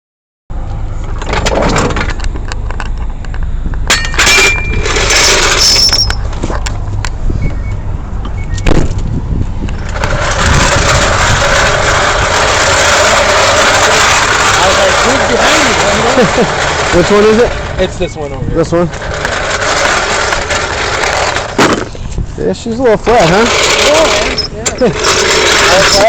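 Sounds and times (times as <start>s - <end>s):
knocks and clunks: 1.1s - 9.1s, 18.9s - 22.2s
broad rushing noise: 3.8s - 26.0s
vehicle engine idling: 4.6s - 26.0s.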